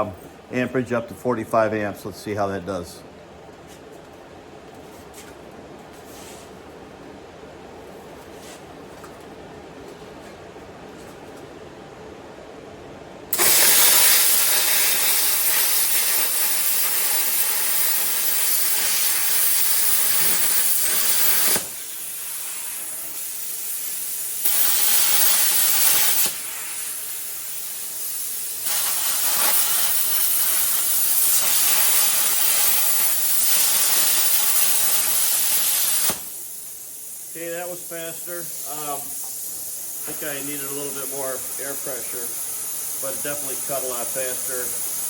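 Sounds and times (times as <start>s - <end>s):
plasma cutter hissing: 13.3s - 45.0s.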